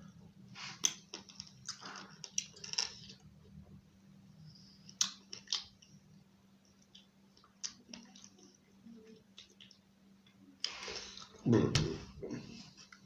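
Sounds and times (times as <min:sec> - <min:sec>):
person chewing food: 0:00.6 - 0:03.2, 0:04.9 - 0:05.9.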